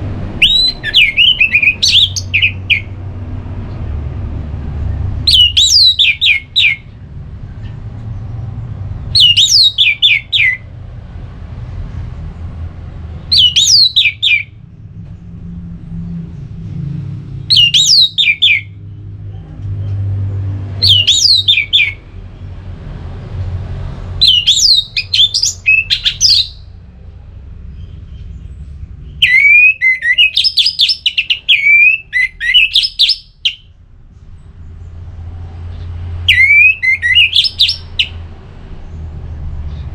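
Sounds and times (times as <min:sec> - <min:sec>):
thrush singing whistled notes: 0:00.3 - 0:03.0, 0:05.3 - 0:07.0, 0:09.1 - 0:10.7, 0:13.3 - 0:14.6, 0:17.5 - 0:18.8, 0:20.8 - 0:22.0, 0:24.2 - 0:26.7, 0:27.8 - 0:33.8, 0:36.2 - 0:38.2.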